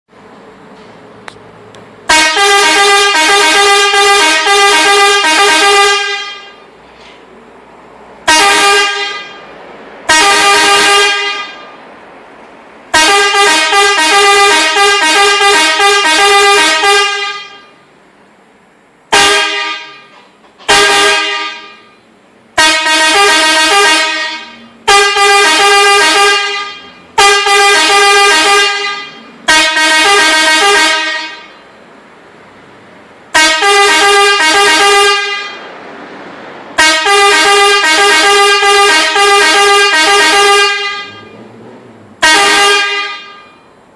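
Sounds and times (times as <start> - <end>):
car horn playing melody: 2.1 - 6.7, 8.2 - 11.7, 12.9 - 17.8, 19.1 - 22.0, 22.6 - 31.7, 33.3 - 35.6, 36.8 - 43.8.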